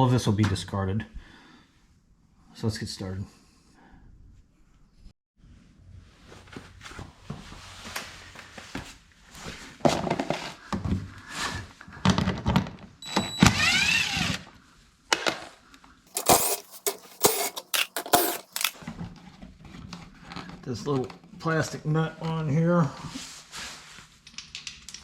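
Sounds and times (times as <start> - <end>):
tools knocking and clattering: 16.2 - 18.8.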